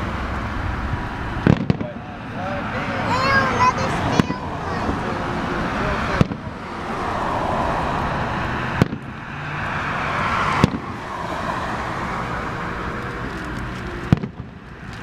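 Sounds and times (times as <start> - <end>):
fireworks bangs: 0.0 - 12.0, 12.8 - 14.7
fireworks crackling: 0.0 - 15.0
steady rushing noise: 0.0 - 15.0.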